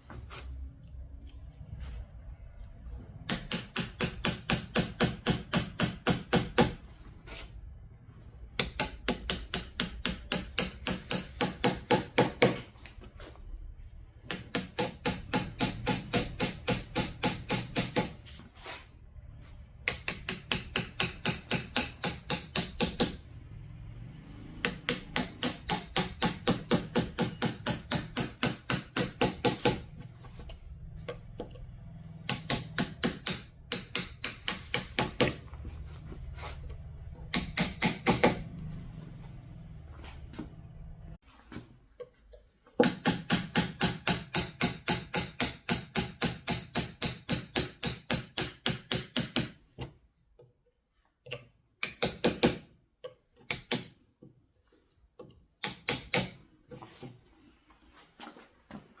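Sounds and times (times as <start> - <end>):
mallet tapping carving knife into wood: 3.2 - 6.8, 8.5 - 12.6, 14.2 - 18.2, 19.8 - 23.2, 24.6 - 30.0, 31.3 - 35.4, 37.2 - 38.5, 42.8 - 50.5, 51.2 - 54.0, 55.2 - 56.4.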